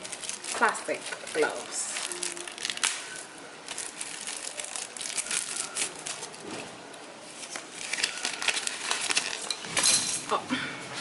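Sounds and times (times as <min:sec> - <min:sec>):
packaging crinkling: 0:00.0 - 0:09.9.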